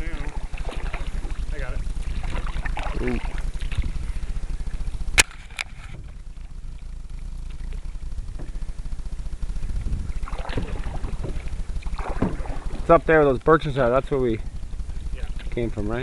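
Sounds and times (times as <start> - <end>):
canoe paddling through water: 0.0 - 16.0
steady low rumble: 0.0 - 16.0
sharp knocks: 10.4 - 12.8.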